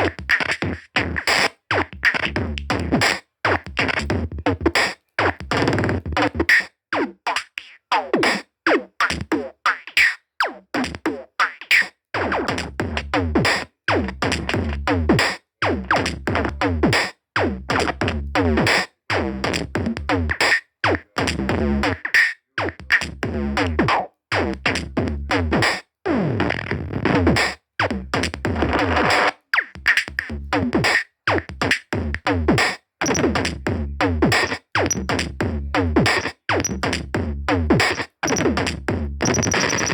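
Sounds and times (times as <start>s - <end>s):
electronic music: 33.0s - 33.4s, 34.4s - 35.2s, 36.1s - 36.9s, 37.9s - 38.6s, 39.3s - 39.9s.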